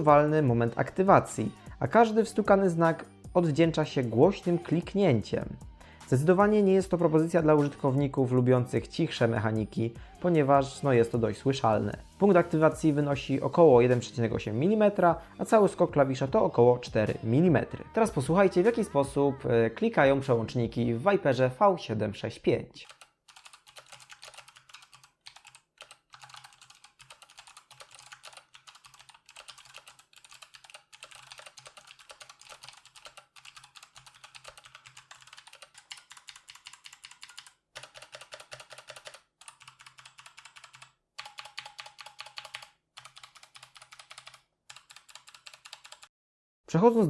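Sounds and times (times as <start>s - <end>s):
mechanical keyboard typing clicks: 22.8s - 46.1s.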